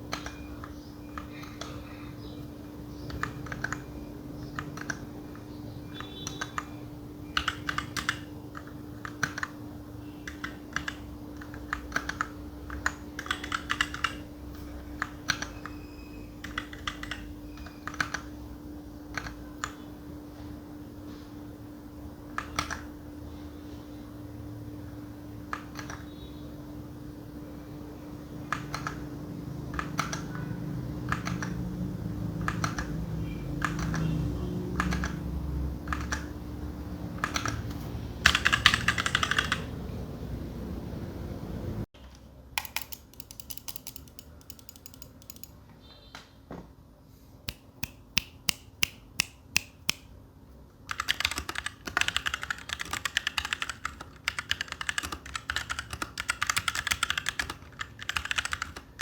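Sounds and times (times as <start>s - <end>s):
mechanical keyboard typing: 0.0s - 2.0s, 3.0s - 9.6s, 10.2s - 18.3s, 19.1s - 19.9s, 22.3s - 23.0s, 25.4s - 26.1s, 28.4s - 36.4s, 37.1s - 39.8s, 42.5s - 45.6s, 50.9s - 59.0s.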